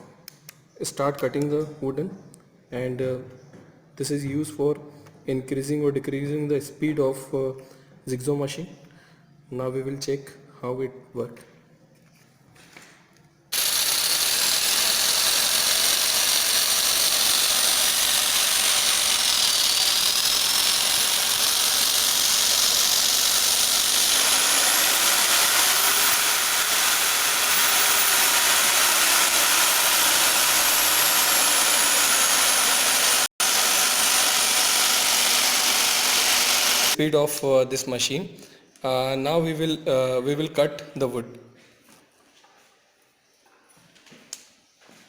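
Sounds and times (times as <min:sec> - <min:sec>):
electric jigsaw running: 0:13.6 - 0:37.0.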